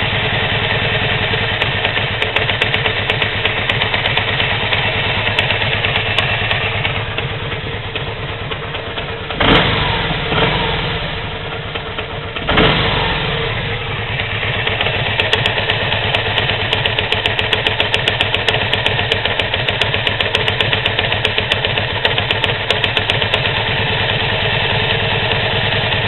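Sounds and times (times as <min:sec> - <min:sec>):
motorcycle engine idling: 0:00.0 - 0:26.0
fast knocking inside engine: 0:00.1 - 0:10.6, 0:11.2 - 0:13.0, 0:13.6 - 0:26.0
engine revving: 0:09.2 - 0:19.6.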